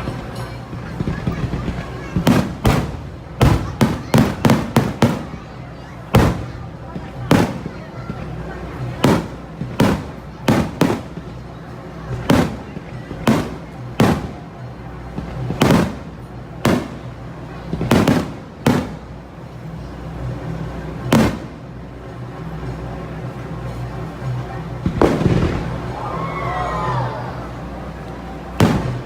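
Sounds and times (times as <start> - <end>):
fireworks bangs: 0.0 - 19.2, 21.0 - 21.7, 24.8 - 26.0, 28.5 - 29.0.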